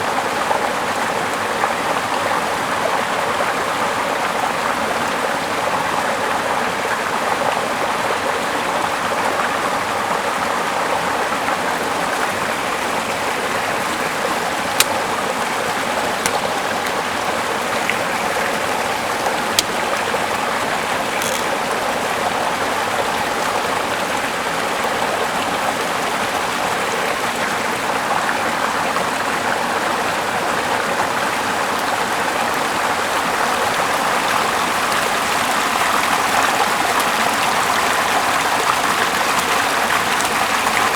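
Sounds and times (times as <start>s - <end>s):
running water flowing: 4.5s - 40.9s
faint clicks: 16.2s - 17.1s, 20.9s - 21.6s.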